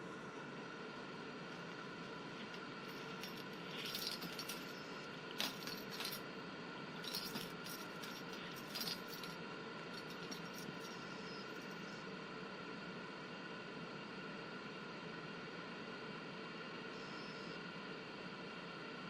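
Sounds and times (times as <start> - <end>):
cat toy jangling and rattling: 2.4 - 6.3, 7.0 - 11.9.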